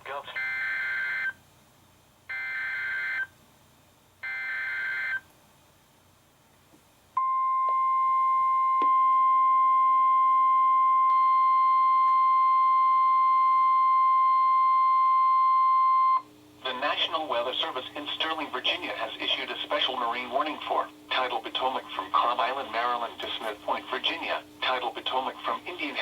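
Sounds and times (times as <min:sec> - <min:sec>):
steady radio alert tones: 0:16.6 - 0:26.0.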